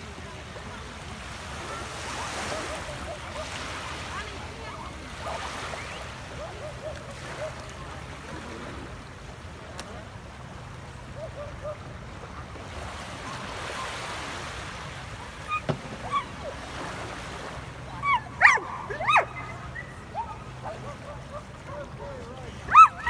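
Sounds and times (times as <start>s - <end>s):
short sharp yelps: 15.5s - 16.3s, 18.0s - 20.3s, 22.7s - 23.0s.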